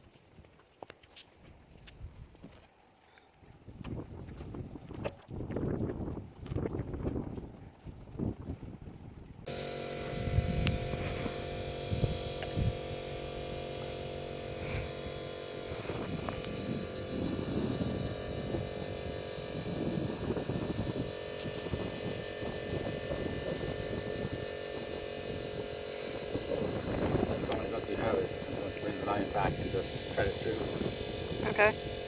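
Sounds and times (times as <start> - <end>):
mechanical drone: 9.5 - 32.0.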